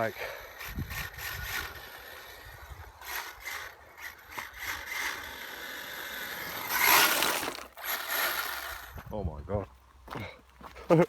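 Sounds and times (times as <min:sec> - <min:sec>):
rc car driving on wet road: 0:00.4 - 0:08.9
rattling: 0:00.6 - 0:08.7.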